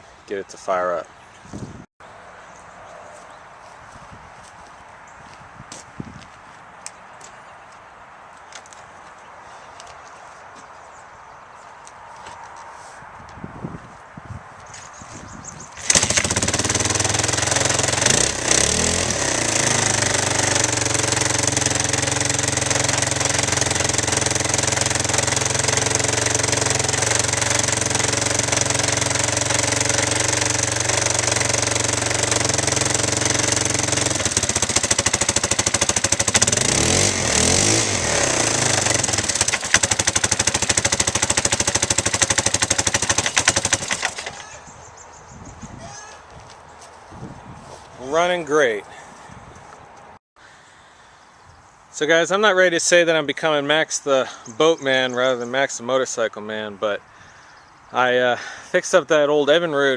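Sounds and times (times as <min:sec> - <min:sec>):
motorcycle engine idling and revving: 0:15.5 - 0:45.6.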